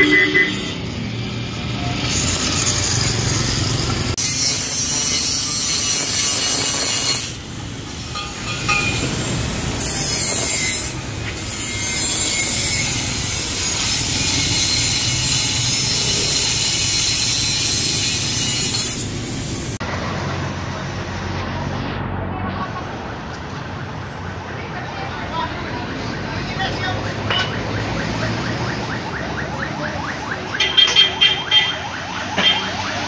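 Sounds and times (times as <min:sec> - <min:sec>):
car road and wind noise: 0:19.1 - 0:25.2.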